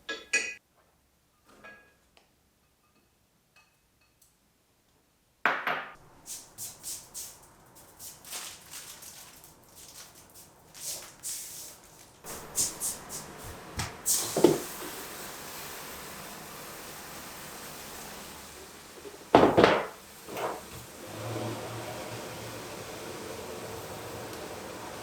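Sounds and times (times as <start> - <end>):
steady hiss: 6.0 - 25.0
objects clattering: 19.3 - 20.7.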